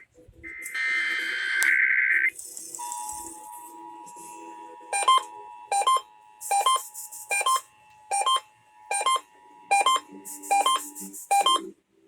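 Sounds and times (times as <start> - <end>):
warbling electronic alarm beeps: 4.8 - 11.7.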